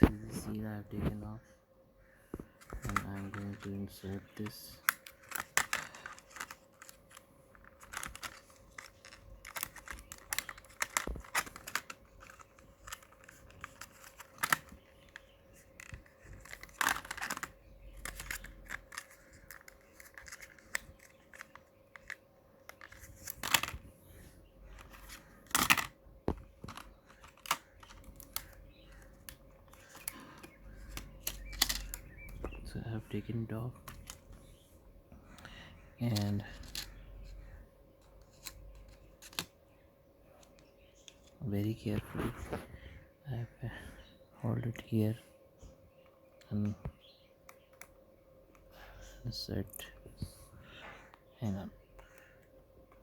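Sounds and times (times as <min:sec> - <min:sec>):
faint hum: 0:00.0 - 0:53.0
plastic snapping: 0:02.3 - 0:23.8, 0:24.7 - 0:32.6
plastic packaging crinkling: 0:02.6 - 0:23.8.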